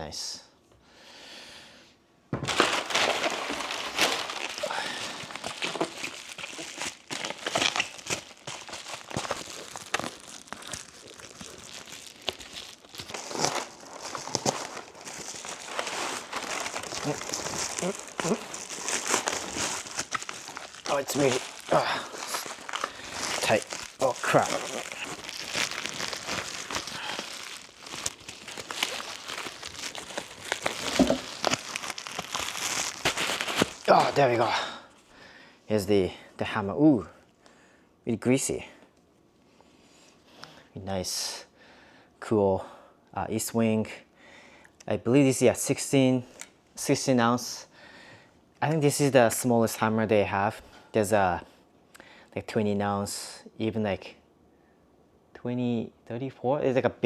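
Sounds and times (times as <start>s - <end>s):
packaging tearing: 2.4s - 34.6s
packaging crinkling and rustling: 2.4s - 34.7s.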